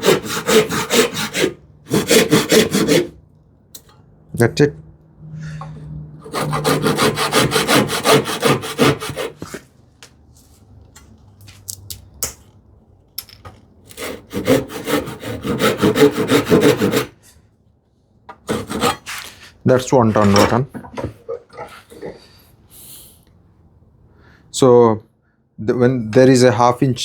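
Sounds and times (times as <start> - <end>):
hand saw cutting wood: 0.0 - 3.2, 6.2 - 9.7, 13.9 - 17.4, 18.3 - 20.6.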